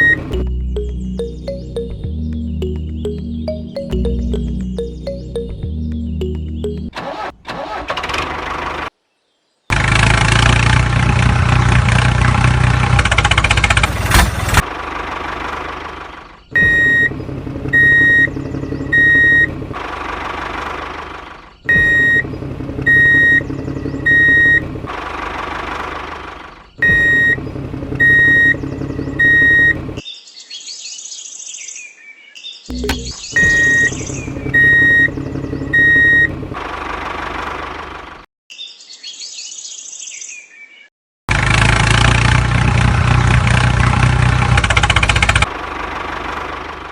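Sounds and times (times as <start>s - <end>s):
engine running: 0.0s - 8.9s, 9.7s - 30.0s, 32.7s - 38.3s, 41.3s - 46.9s
short high electronic beeps: 32.7s - 35.1s.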